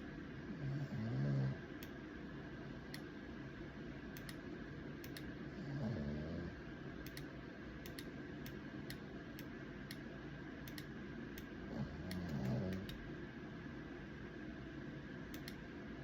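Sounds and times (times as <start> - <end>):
dog snoring: 0.5 - 1.6, 5.6 - 6.5, 11.7 - 12.8
steady light ticking: 4.1 - 5.4, 7.0 - 13.0, 15.3 - 15.7.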